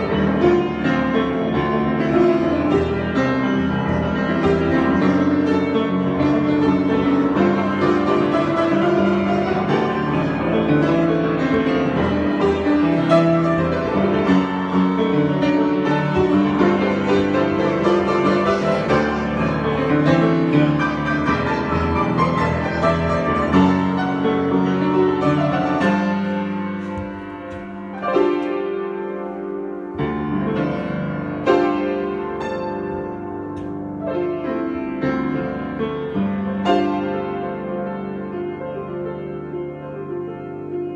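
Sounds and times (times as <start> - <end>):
solo piano: 0.0 - 40.9.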